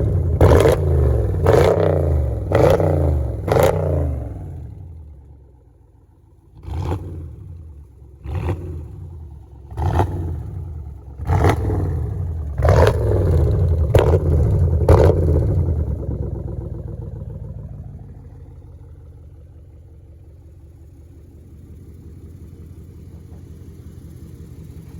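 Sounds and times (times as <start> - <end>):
engine exhaust revving: 0.0 - 5.6, 6.5 - 19.0
engine idling: 0.0 - 24.9.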